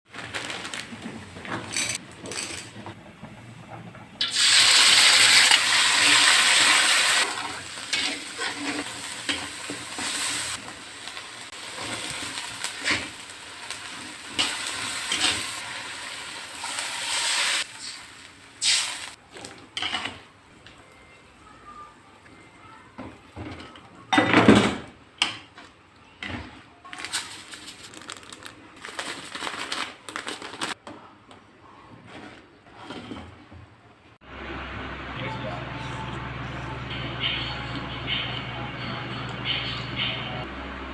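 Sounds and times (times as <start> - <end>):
utensils clinking on pan: 1.5 - 3.0, 7.8 - 10.5
food sizzling in hot oil: 4.2 - 19.2.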